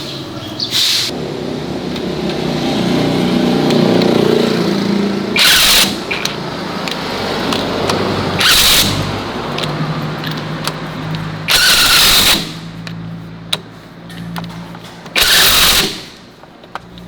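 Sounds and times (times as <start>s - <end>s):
farm vehicle engine running: 0.0s - 17.0s
loud hissing bursts: 15.2s - 16.2s.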